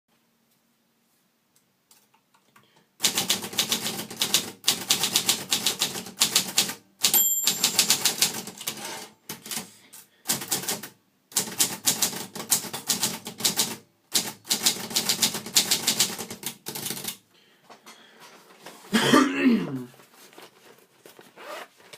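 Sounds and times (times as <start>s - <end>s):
typewriter bell ring: 7.0s - 9.0s.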